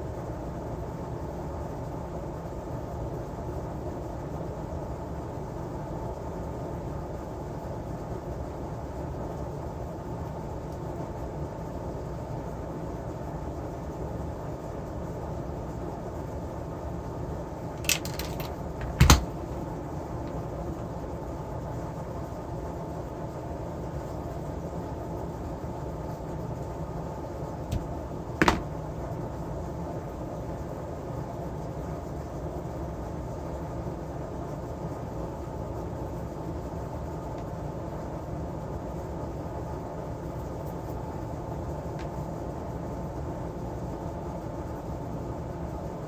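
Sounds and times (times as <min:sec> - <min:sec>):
sharp knock: 0:27.7 - 0:28.7.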